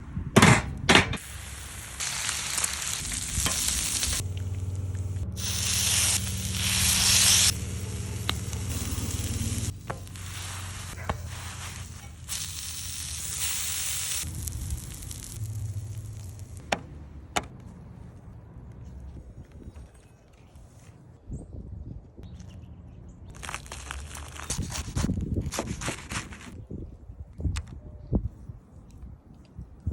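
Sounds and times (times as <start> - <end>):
food sizzling and frying: 1.2 - 16.7, 23.3 - 26.6
low hum: 1.2 - 19.3.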